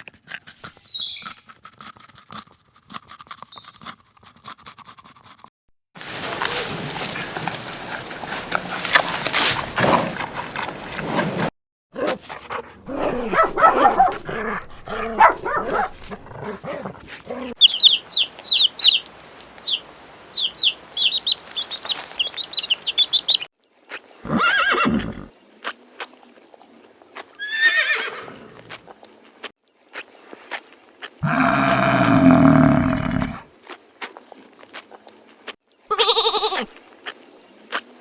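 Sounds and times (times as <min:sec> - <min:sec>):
small bird chirping: 0:00.6 - 0:01.4, 0:03.4 - 0:03.8, 0:17.6 - 0:23.5
horse whinnying: 0:24.2 - 0:25.3, 0:27.4 - 0:28.6, 0:31.2 - 0:33.4, 0:35.9 - 0:36.7.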